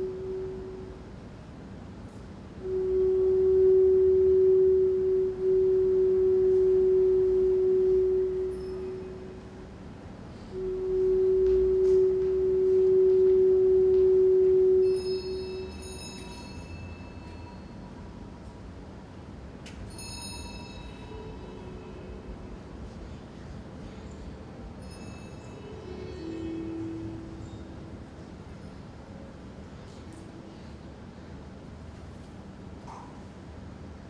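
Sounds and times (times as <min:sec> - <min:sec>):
high ringing tones: 0:00.0 - 0:18.8, 0:19.6 - 0:22.9, 0:23.9 - 0:29.4
steady pure tone: 0:00.0 - 0:32.8.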